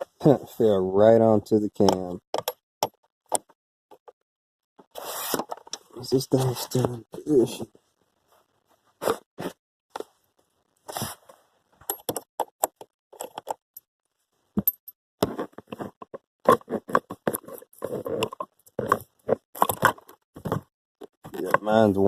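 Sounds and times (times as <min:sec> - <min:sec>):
tools scraping and clicking on plastic: 0:11.8 - 0:13.6, 0:15.2 - 0:21.8.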